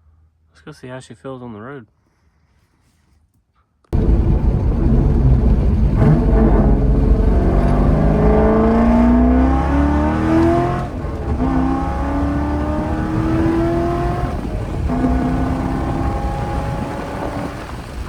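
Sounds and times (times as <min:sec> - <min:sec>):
car engine accelerating hard: 0:04.0 - 0:18.0.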